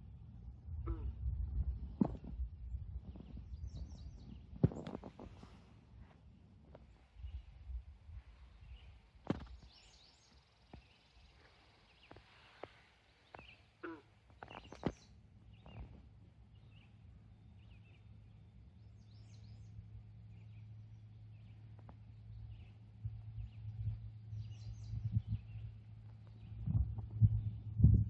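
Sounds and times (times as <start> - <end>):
steady low hum: 0.0 - 28.0
birds chirping: 8.4 - 27.7.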